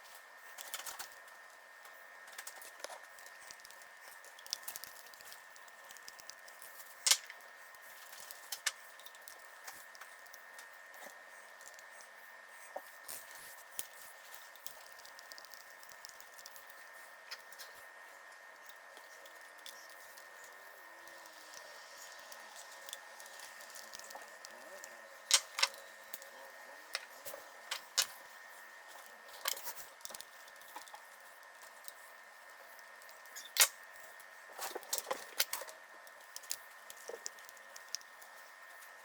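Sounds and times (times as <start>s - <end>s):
small parts and tools clicking: 0.1s - 12.2s, 12.8s - 39.0s.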